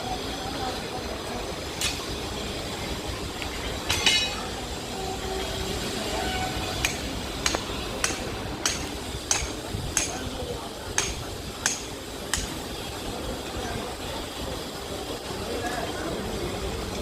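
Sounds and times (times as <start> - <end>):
hammer clinking on steel: 3.9 - 4.4, 6.8 - 10.2.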